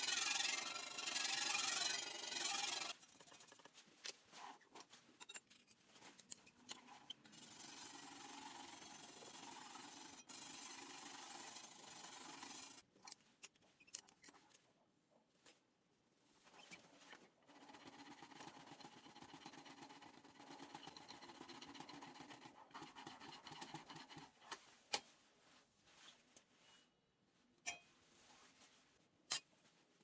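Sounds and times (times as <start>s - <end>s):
scraping on steel knife: 0.0s - 3.7s, 7.0s - 12.8s, 17.5s - 24.6s.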